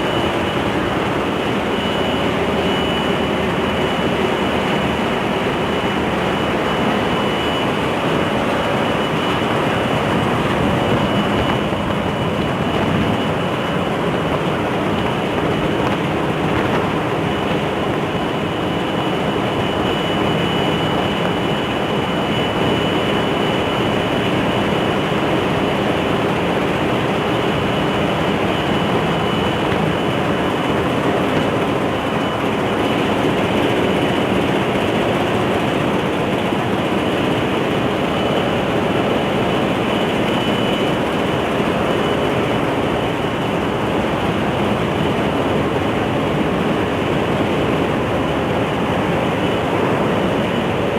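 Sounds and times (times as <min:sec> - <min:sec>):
engine-room machinery running: 0:00.0 - 0:50.9
thin high whine: 0:00.0 - 0:50.9.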